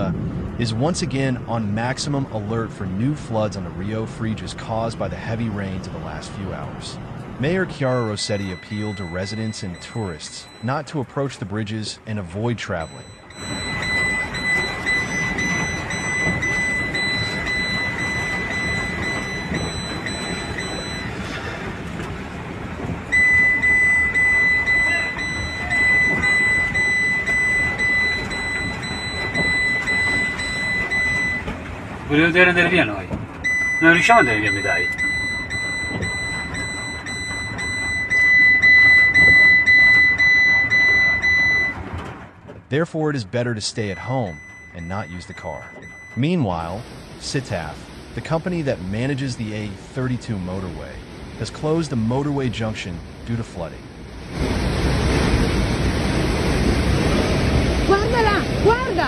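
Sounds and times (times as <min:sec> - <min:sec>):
floodwater rushing: 0:00.0 - 0:59.0
high-pitched electronic alarm tone: 0:07.7 - 0:10.8, 0:12.7 - 0:21.2, 0:23.1 - 0:31.5, 0:32.1 - 0:41.8, 0:44.0 - 0:46.4.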